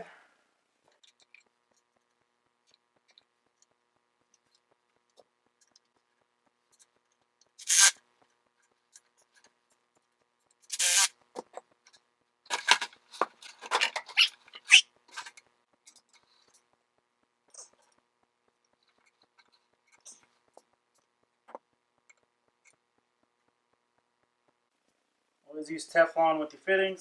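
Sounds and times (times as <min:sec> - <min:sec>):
hands rubbing and scraping fittings: 0:07.6 - 0:08.0, 0:10.6 - 0:11.7, 0:12.5 - 0:16.7.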